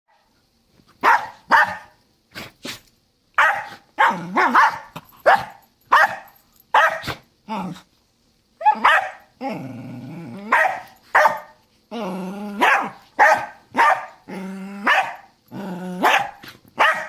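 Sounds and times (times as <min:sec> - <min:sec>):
dogs barking: 0:01.0 - 0:01.9, 0:03.4 - 0:07.2, 0:08.6 - 0:09.2, 0:10.5 - 0:11.6, 0:12.6 - 0:14.3, 0:14.9 - 0:15.3, 0:16.0 - 0:17.0.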